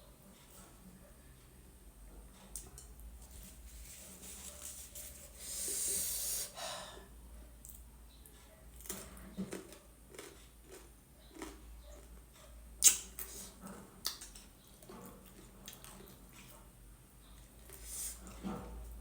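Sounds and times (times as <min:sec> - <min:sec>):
person chewing: 0:08.8 - 0:12.2, 0:12.8 - 0:16.6.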